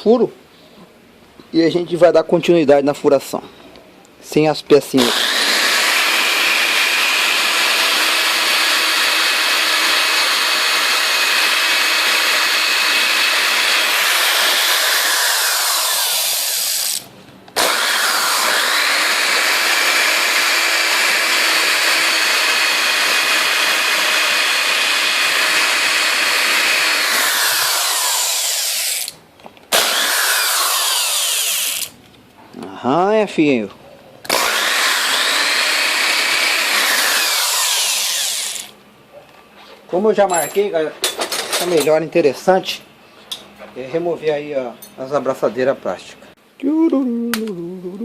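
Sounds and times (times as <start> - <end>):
electric drill boring into steel: 5.0 - 32.0, 34.3 - 38.8.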